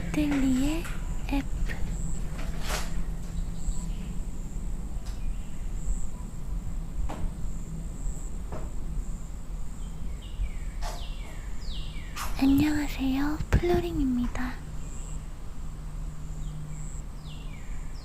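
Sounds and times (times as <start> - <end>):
cricket trill: 0.0 - 18.0
low rumble of fire: 0.0 - 18.0.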